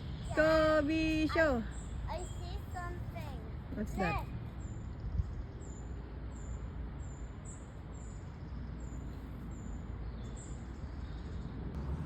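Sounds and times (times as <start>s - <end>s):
bird chirping: 0.0s - 3.2s, 3.8s - 11.7s.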